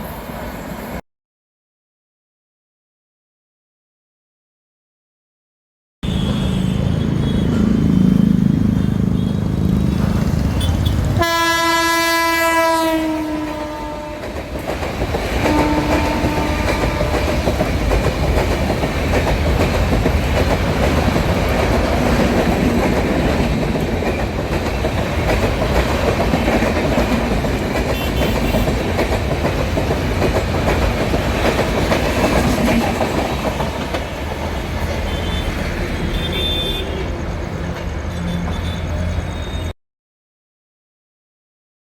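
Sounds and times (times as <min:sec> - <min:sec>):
train horn: 0:06.0 - 0:08.1, 0:10.6 - 0:14.5, 0:15.4 - 0:17.5, 0:27.9 - 0:28.9, 0:34.6 - 0:37.2
train wheels rumbling on rails: 0:06.0 - 0:39.6.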